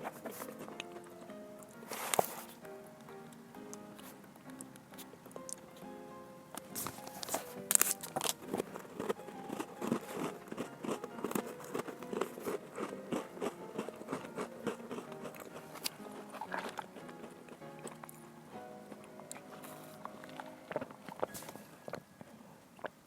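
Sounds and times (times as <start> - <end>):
background music: 0.0 - 22.6
biscuits crunching while chewed: 6.8 - 18.3.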